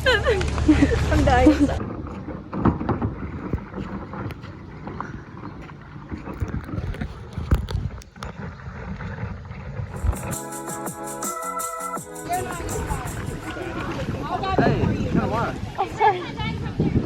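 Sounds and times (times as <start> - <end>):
wind rumbling on microphone: 0.0 - 10.5, 12.2 - 17.0
paddles knocking on kayaks: 1.8 - 8.5
background music: 9.9 - 14.8.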